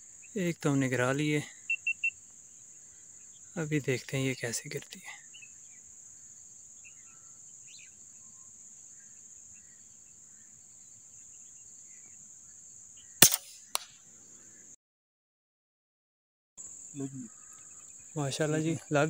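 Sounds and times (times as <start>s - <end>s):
crickets chirping: 0.0s - 14.8s, 16.6s - 19.0s
faint bird chirps: 0.0s - 14.8s, 16.6s - 19.0s
air rifle shot: 13.2s - 13.9s.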